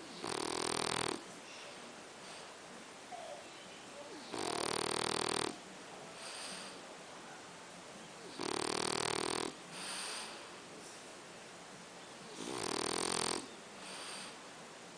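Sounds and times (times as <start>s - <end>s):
pet snoring: 0.0s - 1.3s, 4.1s - 5.6s, 8.2s - 10.4s, 12.3s - 14.4s
soft breathing: 1.4s - 3.4s, 5.9s - 7.4s, 9.6s - 11.2s, 13.4s - 14.6s.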